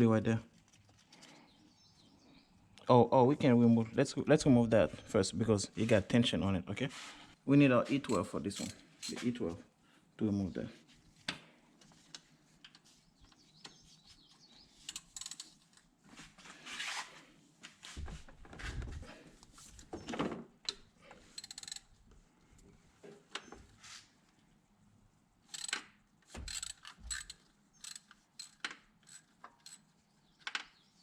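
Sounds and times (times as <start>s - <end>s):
ratchet clicks: 8.1s - 9.2s, 14.9s - 15.6s, 20.7s - 21.9s, 25.5s - 29.8s.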